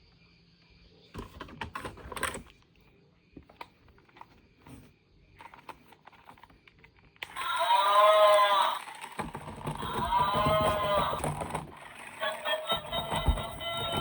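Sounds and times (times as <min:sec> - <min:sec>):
plastic objects clicking and clattering: 0:08.8 - 0:12.1.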